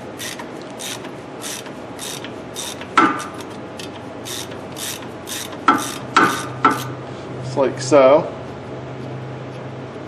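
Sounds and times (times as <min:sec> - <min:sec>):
ratchet pawl rasping: 0:00.1 - 0:06.9.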